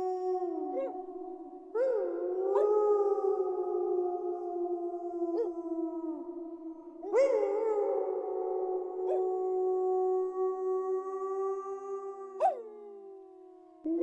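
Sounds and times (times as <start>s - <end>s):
wolves howling: 0.0s - 13.1s
wolf yips: 12.4s - 12.6s.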